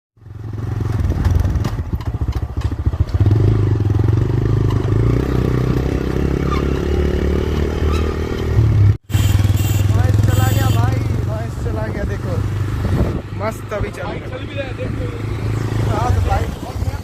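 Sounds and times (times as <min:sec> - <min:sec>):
motorcycle engine running: 0:00.2 - 0:06.3, 0:08.7 - 0:13.2.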